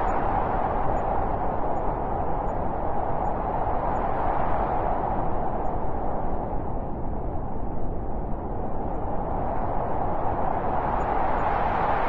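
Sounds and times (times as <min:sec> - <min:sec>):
blizzard wind blowing: 0:00.0 - 0:12.0.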